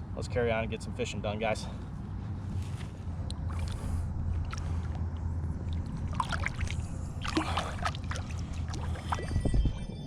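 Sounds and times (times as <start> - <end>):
low rumble: 1.9 - 10.0
water splashing: 5.6 - 9.3.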